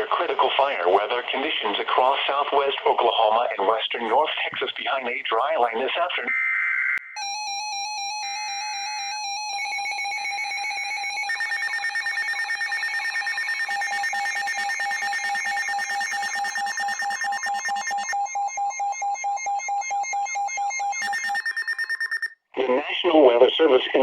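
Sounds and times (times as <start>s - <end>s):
rapid pulsing alarm: 6.4s - 22.4s
electronic alert tones: 8.3s - 22.3s.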